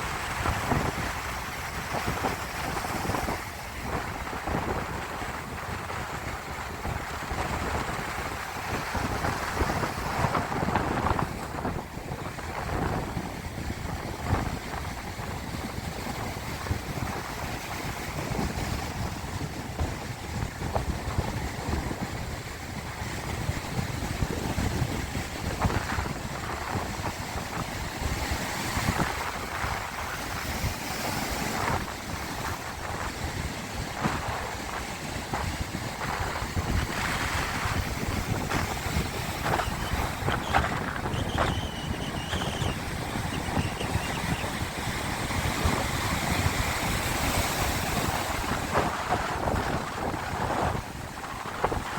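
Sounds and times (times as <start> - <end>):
wind rumbling on microphone: 0.0 - 51.9
small waves splashing: 28.8 - 51.9.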